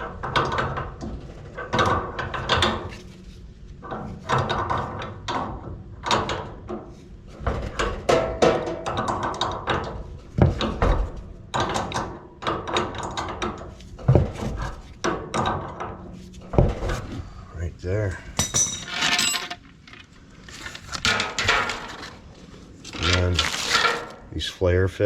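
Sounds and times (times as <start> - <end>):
metal tools knocking and clattering: 7.4 - 17.1, 18.2 - 20.1, 20.8 - 22.3.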